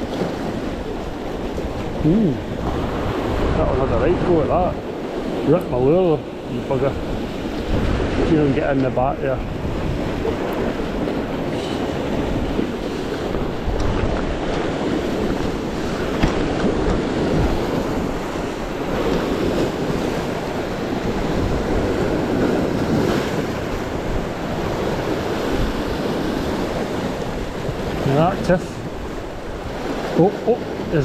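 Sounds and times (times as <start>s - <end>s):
surf washing on shore: 0.0s - 31.0s
wind buffeting microphone: 0.0s - 31.0s.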